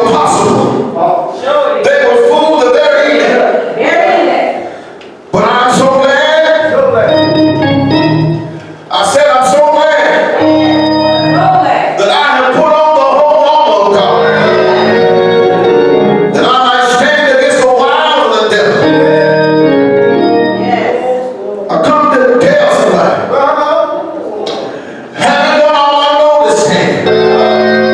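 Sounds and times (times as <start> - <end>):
church organ chords: 5.4 - 21.1, 25.2 - 27.9.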